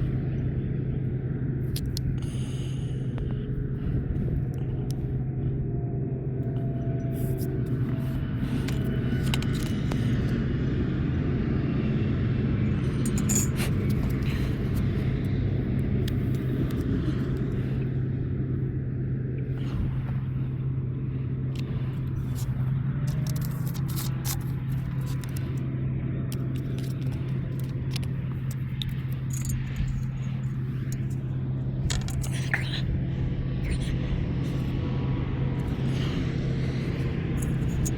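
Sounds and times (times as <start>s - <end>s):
motor humming: 12.6s - 37.9s.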